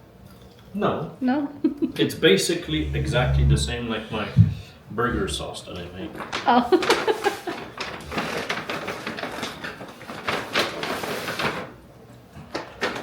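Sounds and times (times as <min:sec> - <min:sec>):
paper wrappers rustling: 0:06.1 - 0:11.8.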